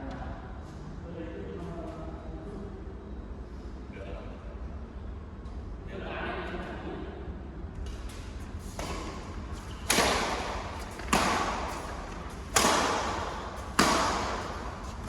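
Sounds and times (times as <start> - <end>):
badminton rackets hitting shuttlecock: 8.8 - 15.0.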